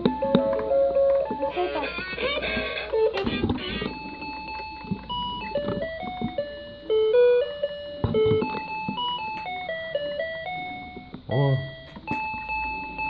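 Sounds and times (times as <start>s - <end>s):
handling knocks: 0.0s - 9.8s
toy guitar beeping melody: 0.0s - 13.0s.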